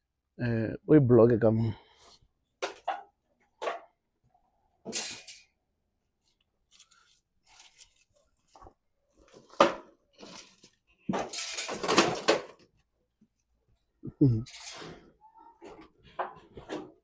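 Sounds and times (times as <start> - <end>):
rustling and scuffling: 6.2 - 12.6.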